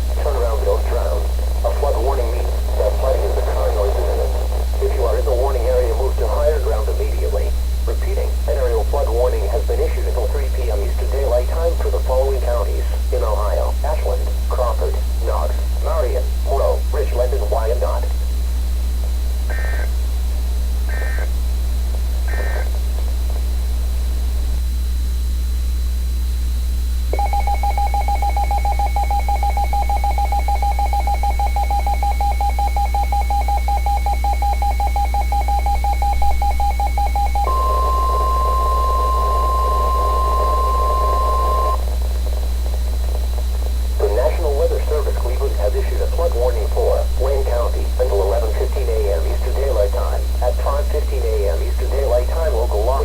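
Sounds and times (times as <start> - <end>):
steady pure warning tone: 0.0 - 53.0
pulsing raspy attention tone: 19.3 - 20.2, 20.8 - 24.4, 27.1 - 53.0
data burst squawks: 19.5 - 20.0, 20.9 - 21.4, 22.3 - 22.7, 37.0 - 41.8.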